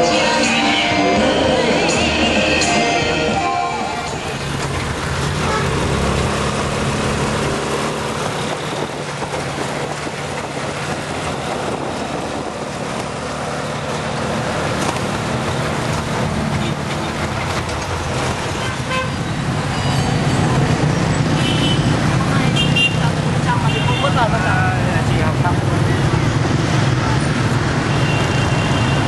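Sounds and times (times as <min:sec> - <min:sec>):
vehicle engines running: 0:00.0 - 0:29.0
car horns tooting: 0:18.5 - 0:20.4, 0:21.2 - 0:24.4, 0:27.8 - 0:29.0.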